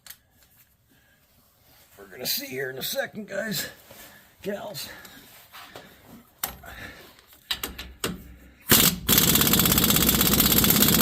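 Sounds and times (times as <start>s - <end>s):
impact wrench hammering: 7.6s - 11.0s.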